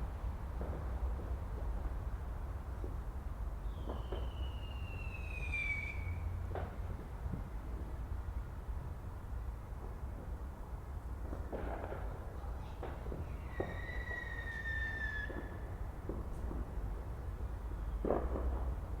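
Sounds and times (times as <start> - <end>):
fireworks pops and bangs: 0.1 - 5.9, 6.5 - 19.0
whistling firework: 3.6 - 7.0, 12.8 - 19.0.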